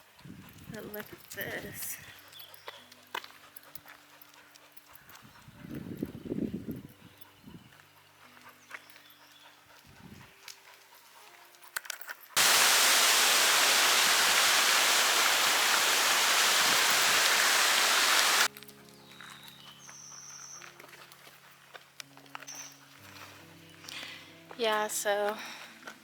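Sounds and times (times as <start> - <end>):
loud rushing hiss: 12.4 - 18.5.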